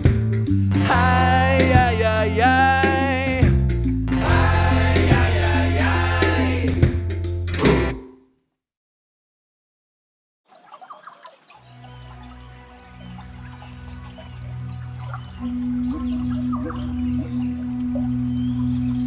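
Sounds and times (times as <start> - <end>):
acoustic guitar song: 0.0 - 8.1
wordless singing: 0.7 - 7.2.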